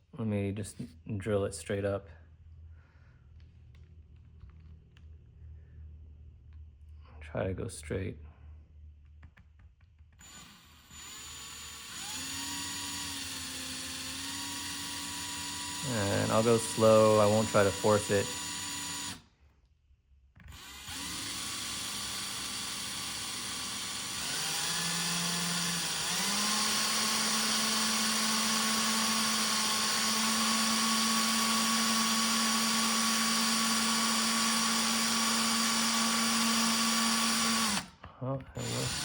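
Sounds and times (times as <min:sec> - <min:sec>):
electric drill drilling plastic: 0:10.2 - 0:19.3, 0:20.4 - 0:37.9, 0:38.6 - 0:39.0.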